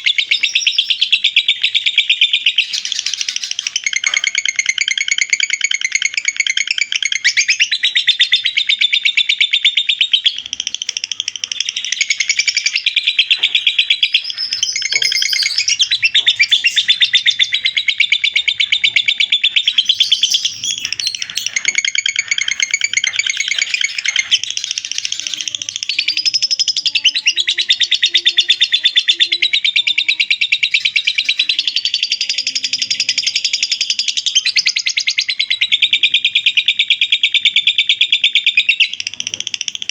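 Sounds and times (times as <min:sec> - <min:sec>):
lovebird chattering song: 0:00.0 - 0:39.9.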